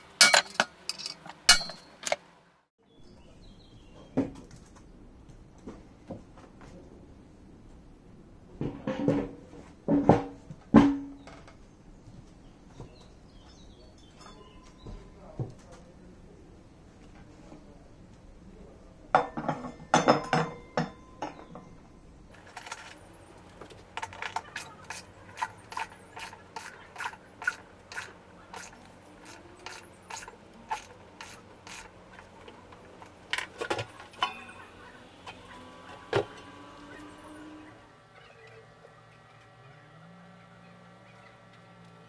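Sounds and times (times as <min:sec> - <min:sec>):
mechanical clicks of tools: 0:00.0 - 0:02.2, 0:22.4 - 0:33.8.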